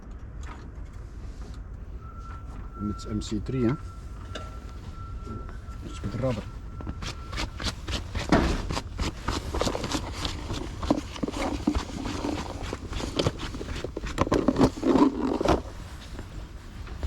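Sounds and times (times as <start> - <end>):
hand work clicks and scraping: 7.0 - 17.0.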